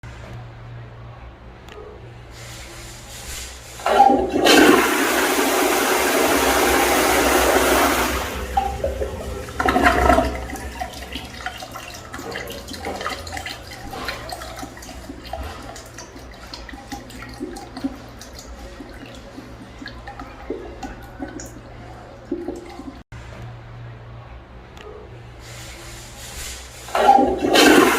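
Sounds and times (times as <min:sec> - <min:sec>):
toilet flushing rush of water: 0:03.3 - 0:23.0, 0:26.8 - 0:27.9
water gurgling and trickling: 0:03.8 - 0:23.1, 0:26.8 - 0:27.9.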